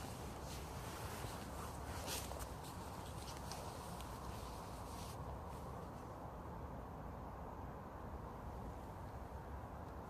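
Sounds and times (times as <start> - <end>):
faint rustling: 0.0 - 6.2.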